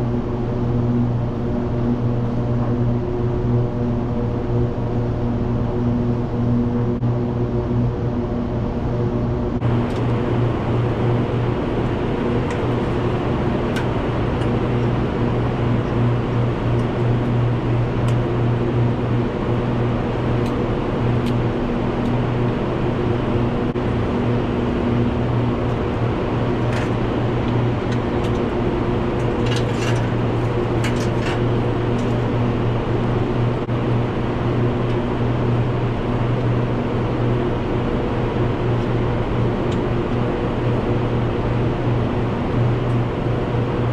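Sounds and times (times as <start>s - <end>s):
tractor engine droning: 9.6s - 36.2s.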